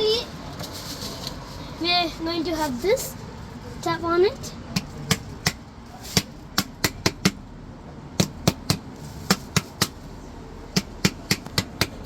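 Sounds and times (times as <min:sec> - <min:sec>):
sharp taps on a soil container: 0:08.2 - 0:10.0, 0:10.7 - 0:12.0.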